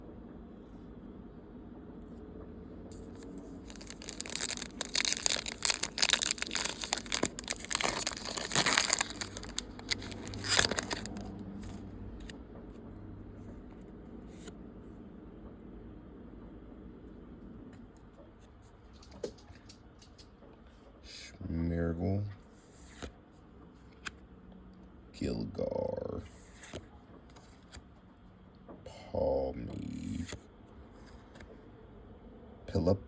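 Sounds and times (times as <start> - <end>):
foil wrapper crinkling: 3.1 - 11.8.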